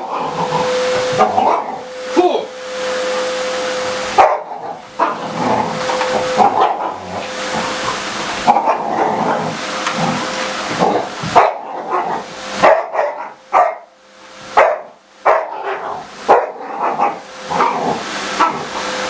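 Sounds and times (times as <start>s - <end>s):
dog barking loudly: 1.2s - 1.8s, 4.1s - 5.6s, 6.2s - 7.1s, 11.3s - 13.9s, 14.5s - 17.8s.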